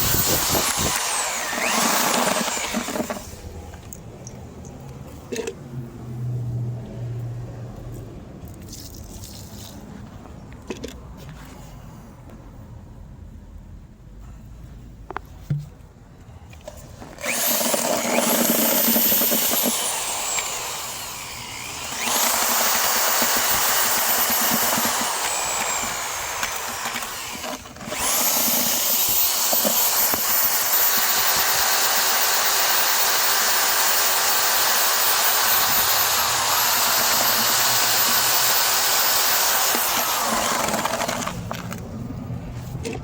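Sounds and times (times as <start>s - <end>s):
electric drill mixing mortar: 0.0s - 3.5s, 17.1s - 41.8s.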